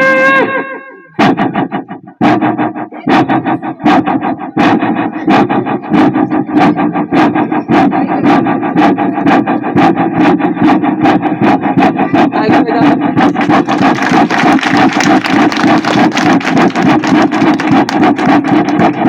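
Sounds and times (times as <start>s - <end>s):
man imitating train chugging: 0.0s - 19.0s.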